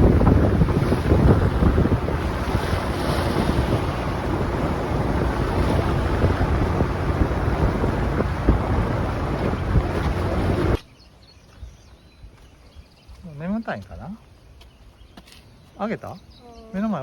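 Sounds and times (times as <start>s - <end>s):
low engine rumble: 0.0s - 10.8s
sea water rushing: 0.0s - 10.8s
wind buffeting microphone: 0.0s - 13.3s.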